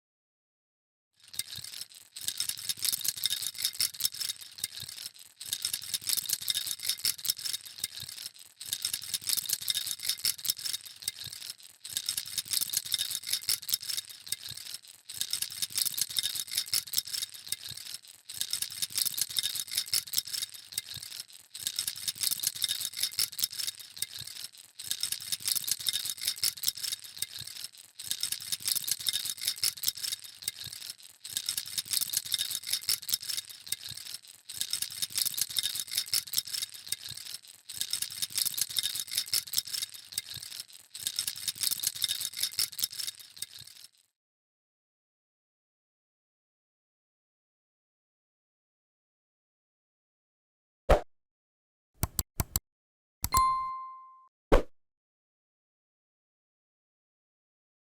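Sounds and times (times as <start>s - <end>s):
baby rattle shaken: 1.2s - 44.1s.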